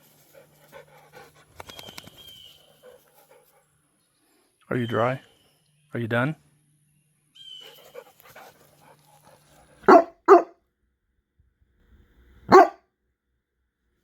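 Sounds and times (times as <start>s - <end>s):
dog barking: 9.8s - 10.6s, 12.5s - 12.8s.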